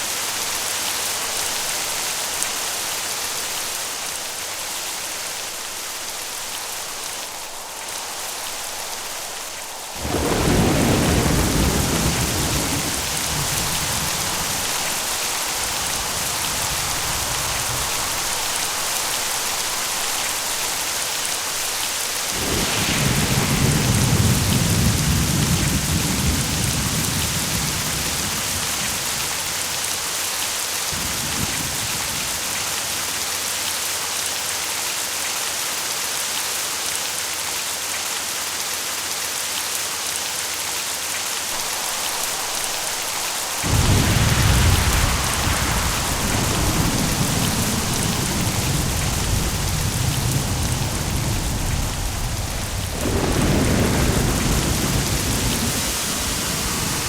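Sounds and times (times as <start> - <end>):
heavy rain: 0.0 - 57.0
thunder rumbling: 5.3 - 32.9, 41.5 - 57.0.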